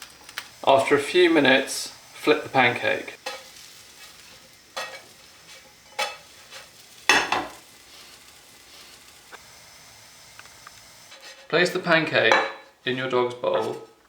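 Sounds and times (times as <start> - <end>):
pancake sizzling in a pan: 0.0 - 13.0
utensil scraping a pan: 2.2 - 9.4, 11.1 - 11.7.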